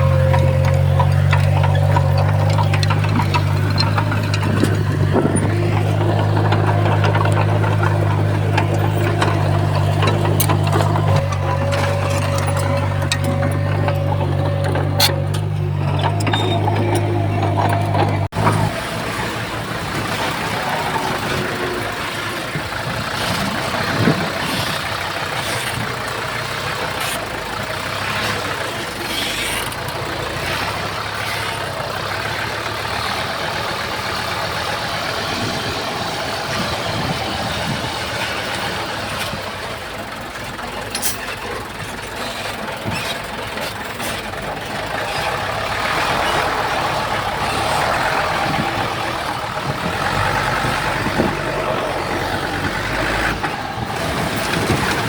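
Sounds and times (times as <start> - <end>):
sharp clanks and knocks: 0.0 - 18.8
heavy diesel machinery running: 0.0 - 55.0.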